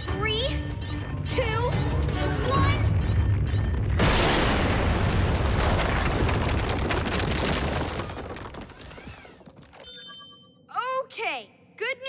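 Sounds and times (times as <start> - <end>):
cartoon explosion and rumble: 2.7 - 9.5.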